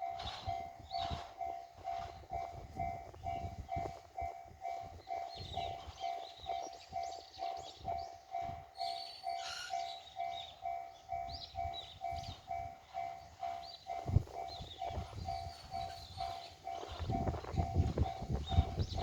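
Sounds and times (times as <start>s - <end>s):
level crossing warning bell dinging: 0.0s - 19.0s
birds chirping: 5.0s - 19.0s.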